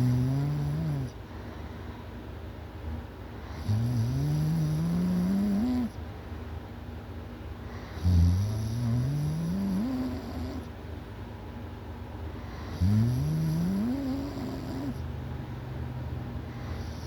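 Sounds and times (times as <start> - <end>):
loud snoring: 0.0 - 1.1, 3.5 - 5.9, 8.0 - 10.7, 12.6 - 15.0, 16.6 - 17.0.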